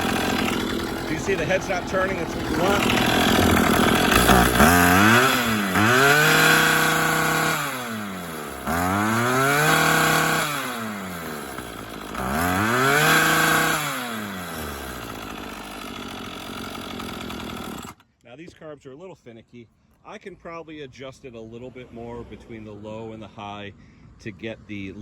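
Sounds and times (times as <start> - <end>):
string trimmer engine revving: 0.0 - 18.0.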